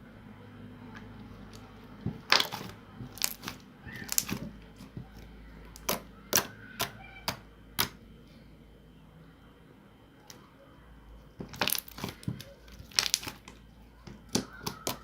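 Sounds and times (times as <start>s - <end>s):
slime clicking and popping: 2.2s - 4.9s, 5.8s - 8.0s, 11.4s - 15.0s.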